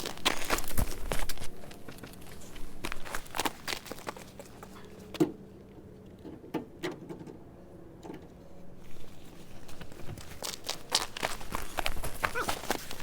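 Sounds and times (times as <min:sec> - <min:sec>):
footsteps: 0:00.0 - 0:05.2, 0:08.8 - 0:13.0.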